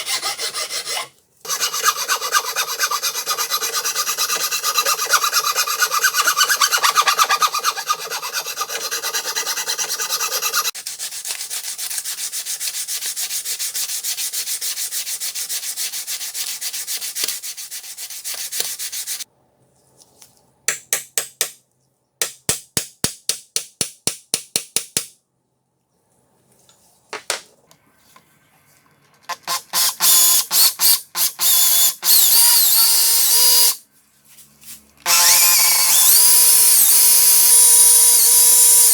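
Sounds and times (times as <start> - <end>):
file scraping metal: 0.0 - 19.1.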